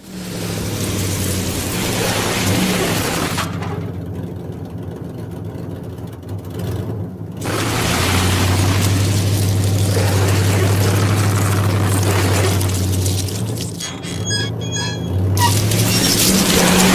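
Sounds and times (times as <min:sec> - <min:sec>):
vehicle engine drone: 0:00.0 - 0:16.9.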